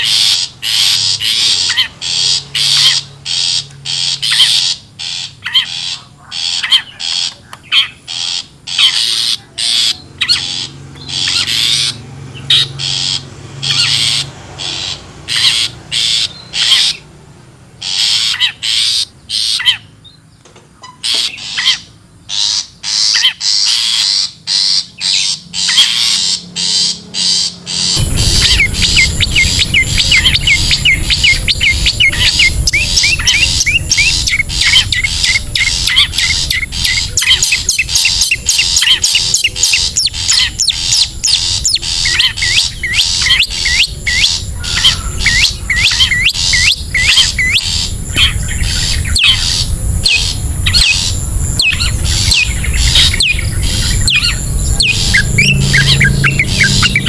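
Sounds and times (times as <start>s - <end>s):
bird chirps and squawks: 0.0s - 17.2s, 17.8s - 20.2s, 20.8s - 57.0s
low rumble: 27.6s - 57.0s.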